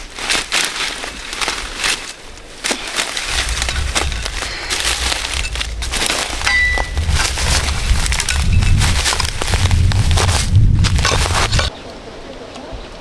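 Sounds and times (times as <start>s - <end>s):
dry plants crunching and snapping: 0.0s - 11.7s
low rumble: 2.9s - 11.7s.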